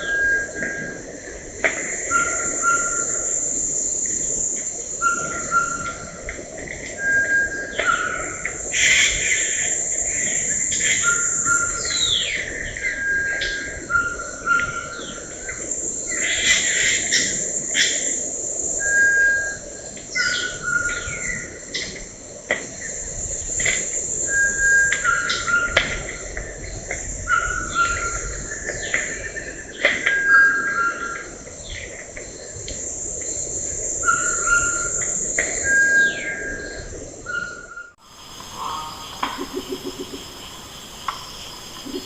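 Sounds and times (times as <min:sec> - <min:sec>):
insects high-pitched chorus: 0:00.0 - 0:06.3, 0:07.0 - 0:42.0
downward-sliding bird calls: 0:38.1 - 0:42.0.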